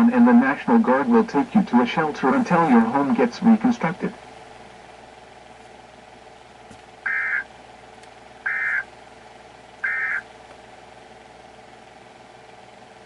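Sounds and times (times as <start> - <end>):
steady low hum: 0.0 - 13.0
warbling data tone bursts: 7.1 - 7.5, 8.5 - 8.9, 9.8 - 10.2.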